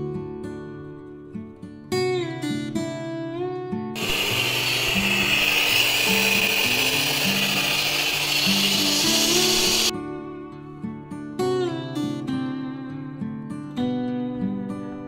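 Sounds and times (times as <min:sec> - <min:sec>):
acoustic guitar music: 0:00.0 - 0:15.0.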